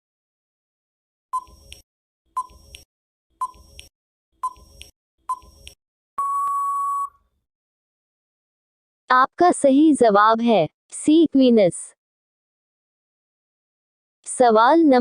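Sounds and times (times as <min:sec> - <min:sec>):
short countdown beeps: 0:01.4 - 0:01.6, 0:03.4 - 0:03.6, 0:04.4 - 0:05.6, 0:06.2 - 0:07.2
long steady beep: 0:06.2 - 0:07.2.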